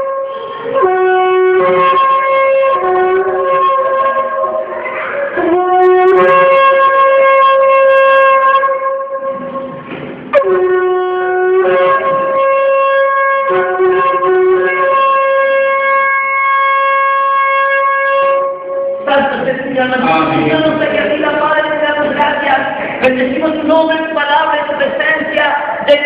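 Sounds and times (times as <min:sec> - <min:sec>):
shofar blasts: 0:00.0 - 0:19.2.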